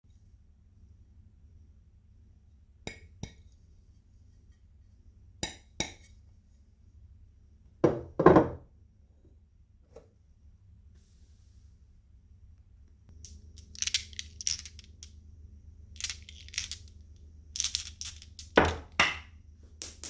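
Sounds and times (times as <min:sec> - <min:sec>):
marbles and pieces clinking: 0:13.1 - 0:20.0.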